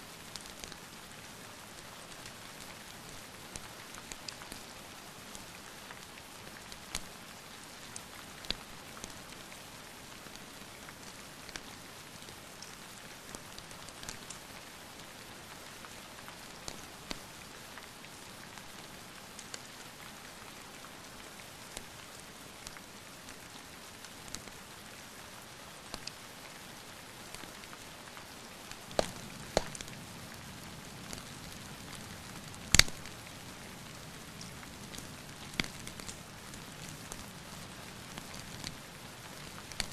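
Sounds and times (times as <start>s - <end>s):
steady rain: 0.0s - 39.9s
wood fire crackling and popping: 25.9s - 26.2s, 28.7s - 39.9s.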